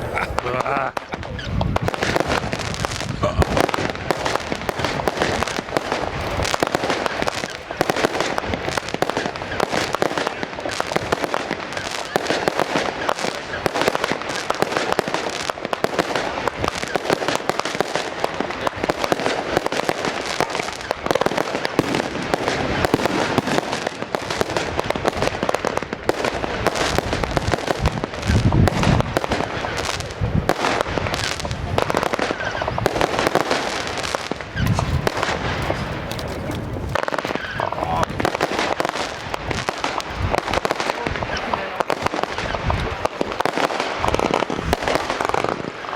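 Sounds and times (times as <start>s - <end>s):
deep firework booms: 0.0s - 45.9s
fireworks crackling and popping: 0.0s - 45.9s.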